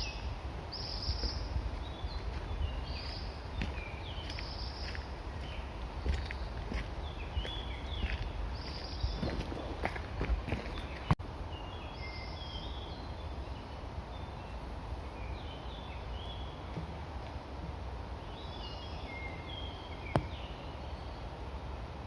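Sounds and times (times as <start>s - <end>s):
songbird whistling song: 0.0s - 9.4s
steady low rumble: 0.0s - 11.3s.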